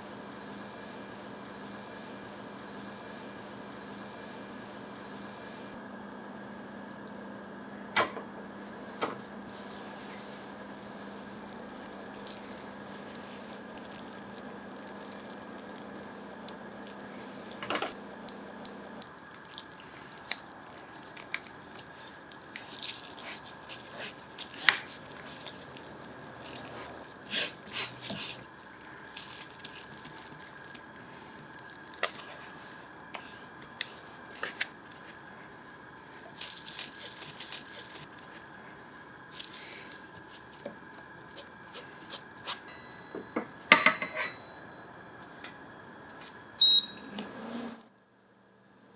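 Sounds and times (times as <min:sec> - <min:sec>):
potatoes being peeled by hand: 0:19.0 - 0:42.7.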